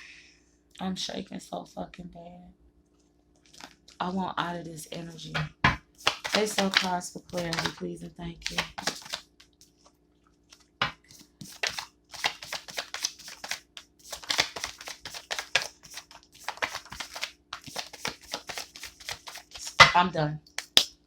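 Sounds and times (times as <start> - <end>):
cards being shuffled: 6.0 - 7.8, 8.4 - 9.8, 10.5 - 19.8, 20.5 - 20.9.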